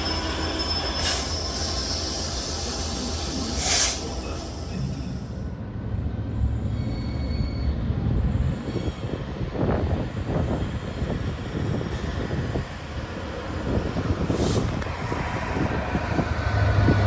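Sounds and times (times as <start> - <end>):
high wheel squeal: 0.0 - 5.2, 6.4 - 9.1
train wheels rumbling on track: 0.0 - 17.0.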